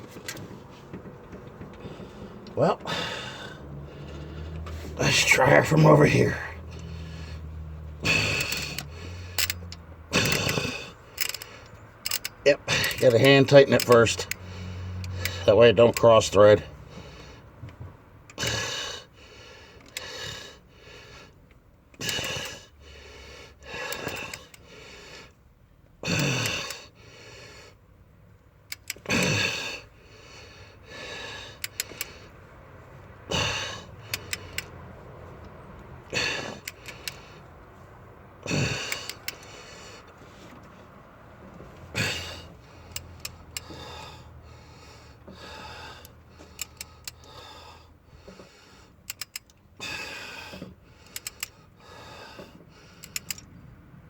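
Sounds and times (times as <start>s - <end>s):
man breathing hard and gasping: 1.6s - 11.7s, 16.7s - 17.6s, 18.3s - 25.4s, 26.0s - 27.8s, 28.8s - 32.6s, 33.2s - 34.9s, 36.0s - 40.6s, 41.8s - 49.1s, 49.8s - 53.4s
wrench clicking: 8.0s - 16.8s, 19.8s - 20.4s, 21.5s - 22.8s, 23.6s - 24.6s, 26.1s - 27.0s, 28.6s - 29.9s, 31.0s - 32.4s, 33.3s - 34.8s, 35.4s - 37.5s, 38.4s - 40.6s, 41.8s - 44.3s, 45.1s - 53.6s.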